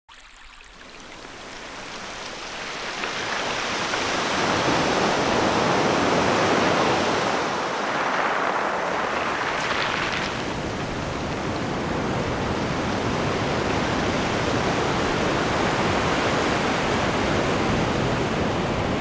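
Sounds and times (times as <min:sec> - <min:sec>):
ocean waves washing onto shore: 0:00.8 - 0:19.0.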